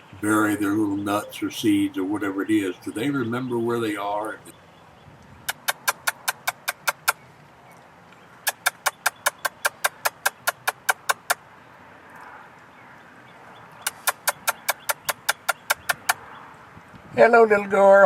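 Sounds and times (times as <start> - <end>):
squirrel chattering: 0.0 - 4.5, 5.4 - 7.2, 8.4 - 11.4, 13.8 - 16.4.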